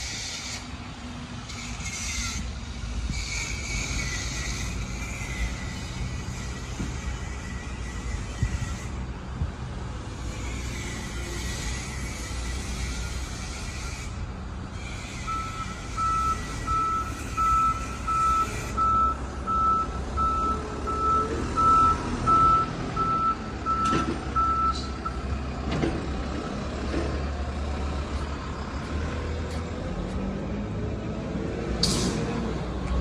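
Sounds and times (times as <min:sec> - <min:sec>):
engine running: 0:02.4 - 0:33.0
reversing alarm beeping: 0:15.2 - 0:25.3
sharp knocks or hisses: 0:31.8 - 0:32.3.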